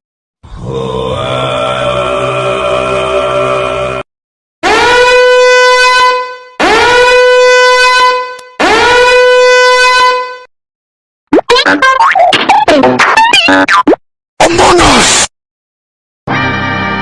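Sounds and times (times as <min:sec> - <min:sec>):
droning chant: 0:00.6 - 0:04.0.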